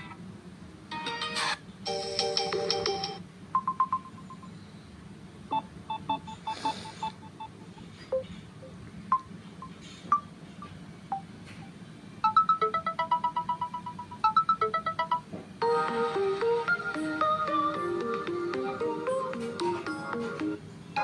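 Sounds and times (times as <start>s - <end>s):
phone ringtones: 1.9s - 4.5s, 12.2s - 18.2s.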